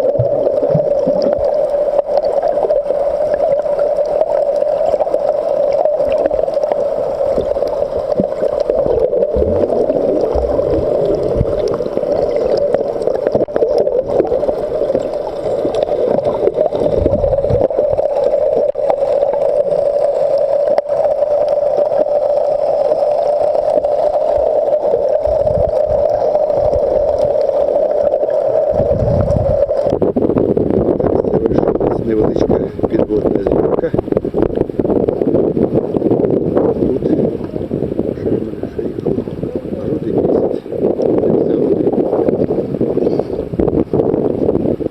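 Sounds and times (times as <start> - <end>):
bubbling: 0.0 - 44.9
underwater drone: 0.0 - 44.9
low thumps: 9.3 - 11.8.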